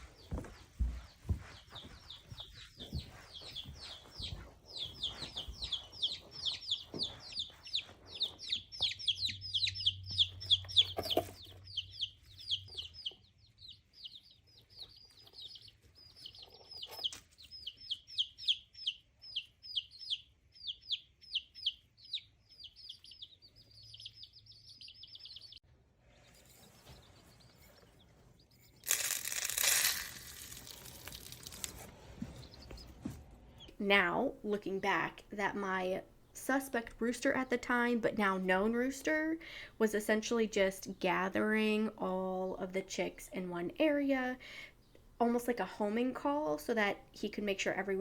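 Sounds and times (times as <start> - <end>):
chicks peeping: 0.0 - 29.7, 30.3 - 33.8.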